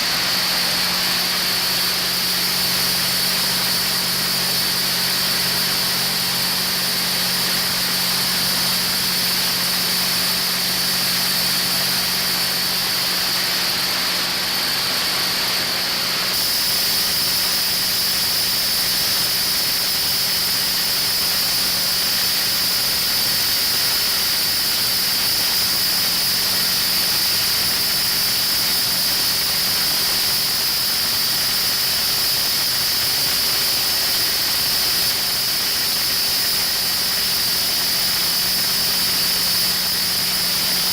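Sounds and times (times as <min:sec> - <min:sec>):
diesel generator running: 0:00.0 - 0:31.3.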